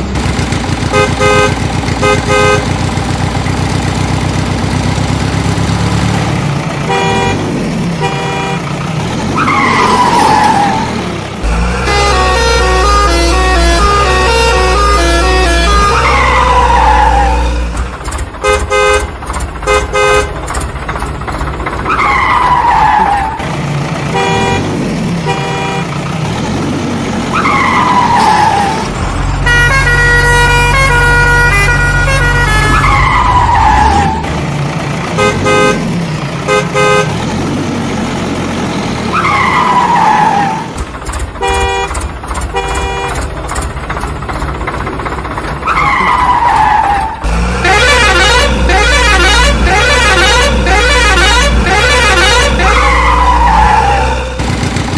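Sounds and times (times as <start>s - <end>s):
steady horn blast: 0.9s - 2.7s, 8.0s - 8.7s, 11.4s - 17.8s, 47.3s - 54.5s.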